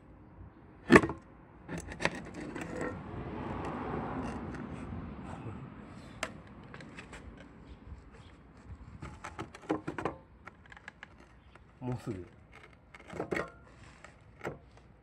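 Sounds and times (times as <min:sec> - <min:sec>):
scraping rustle: 0:06.4 - 0:14.9.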